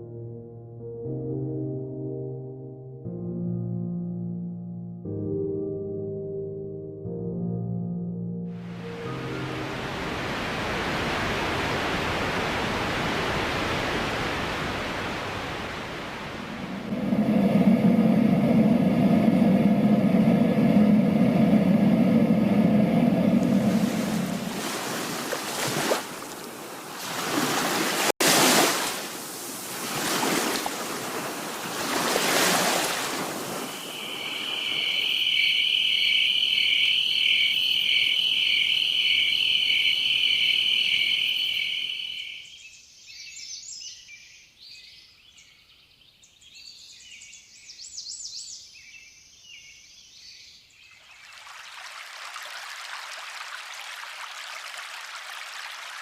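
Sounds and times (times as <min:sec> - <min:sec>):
ocean waves: 0:08.7 - 0:42.2, 0:51.1 - 0:56.0
steady hiss of running stream: 0:09.2 - 0:17.0, 0:23.6 - 0:35.4, 0:50.8 - 0:56.0
high chirps: 0:33.6 - 0:42.5.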